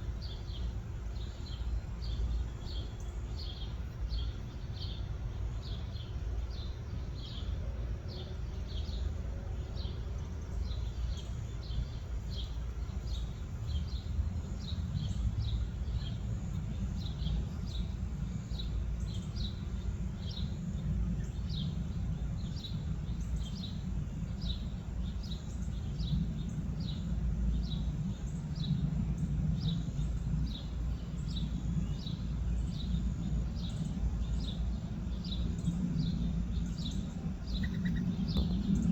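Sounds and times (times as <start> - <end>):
low background rumble: 0.0 - 38.9
small bird chirping: 31.2 - 38.9.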